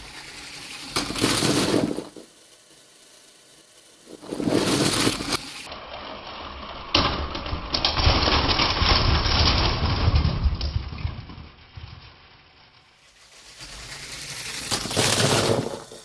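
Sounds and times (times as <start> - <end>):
crash impact: 0.8 - 2.3
rushing burst of noise: 4.0 - 5.7
clattering: 7.0 - 16.0.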